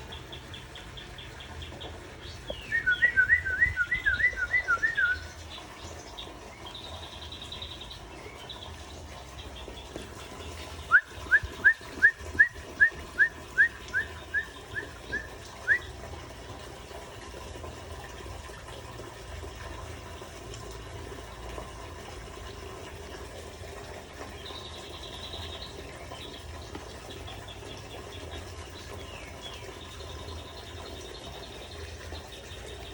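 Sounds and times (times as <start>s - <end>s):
songbird whistling upward notes: 2.5s - 5.4s, 10.9s - 15.9s.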